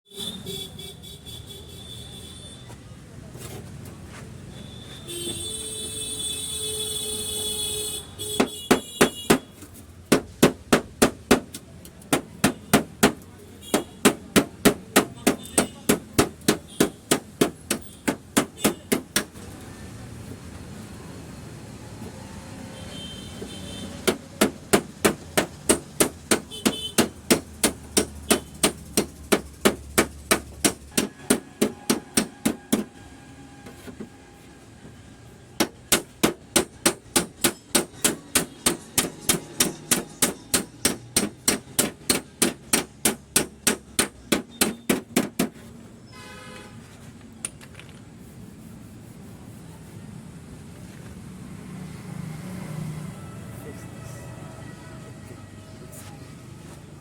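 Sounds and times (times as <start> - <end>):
hammer tapping on metal: 8.4 - 19.4, 24.0 - 33.0, 35.6 - 45.6.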